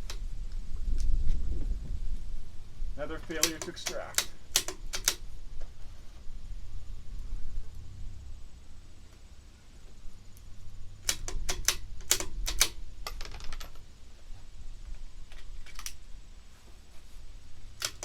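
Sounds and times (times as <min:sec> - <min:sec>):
rifle bolt metallic clicks: 0:03.2 - 0:05.2, 0:11.0 - 0:13.7, 0:15.3 - 0:16.0, 0:17.8 - 0:18.0.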